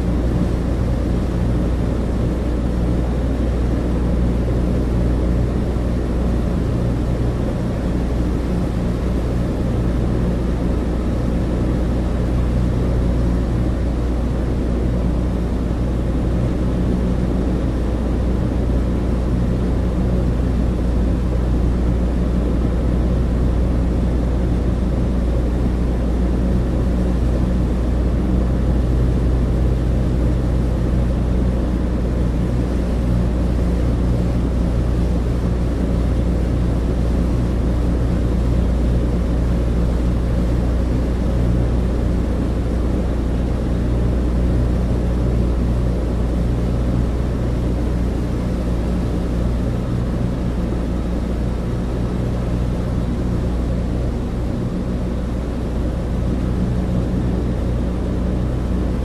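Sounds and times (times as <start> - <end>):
propeller engines droning: 0.0 - 59.0.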